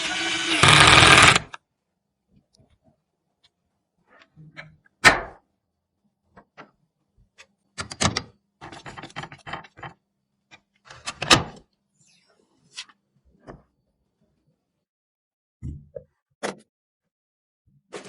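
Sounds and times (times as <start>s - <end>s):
computer parts clicking and knocking: 7.7s - 11.6s.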